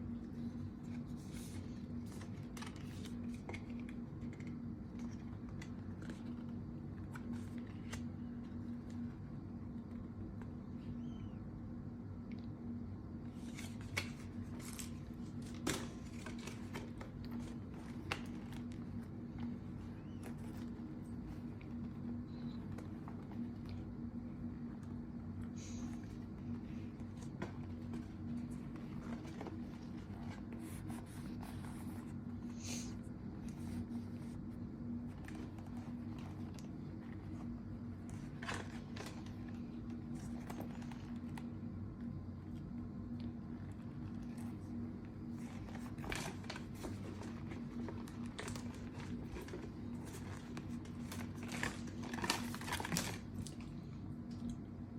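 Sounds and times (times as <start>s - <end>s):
steady low hum: 0.0s - 54.9s
packaging rustles: 45.3s - 53.8s.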